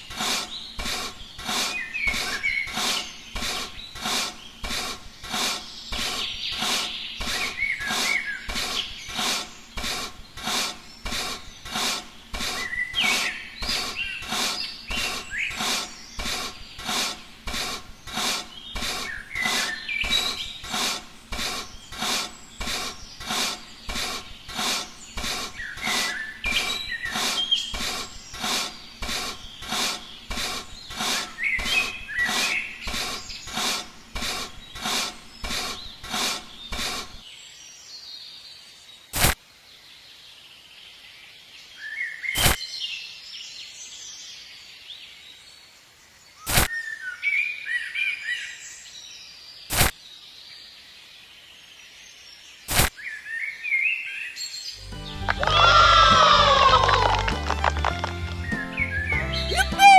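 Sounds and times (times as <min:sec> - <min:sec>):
small birds chirping: 0:00.0 - 0:59.9
rhythmic scraping strokes: 0:54.8 - 0:58.8.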